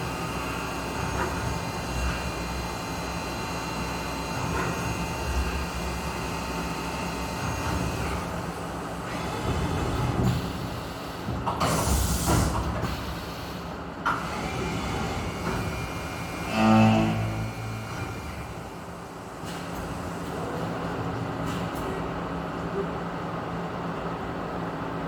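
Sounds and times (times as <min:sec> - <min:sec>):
loud low hum: 0:16.5 - 0:18.4
machining center running: 0:16.5 - 0:19.0.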